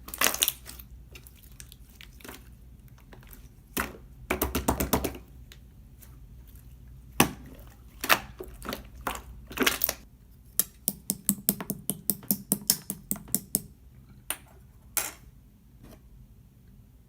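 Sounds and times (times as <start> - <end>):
wet slime squishes: 0.0 - 4.1, 5.3 - 10.1.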